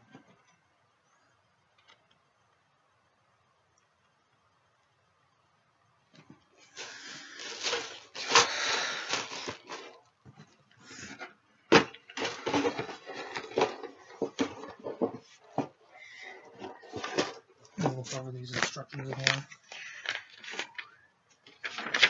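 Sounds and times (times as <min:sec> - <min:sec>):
paper and plastic rustling: 0:06.2 - 0:22.0.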